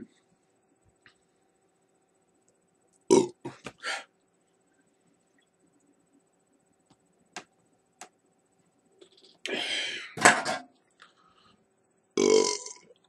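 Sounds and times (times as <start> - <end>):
man burping: 3.1 - 4.0, 12.2 - 12.8.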